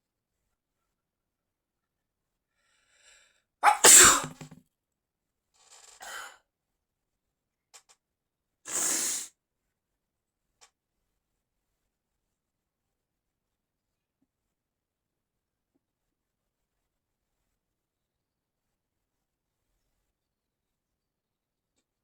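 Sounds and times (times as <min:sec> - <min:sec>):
person sneezing: 0:03.6 - 0:04.6, 0:08.7 - 0:09.3.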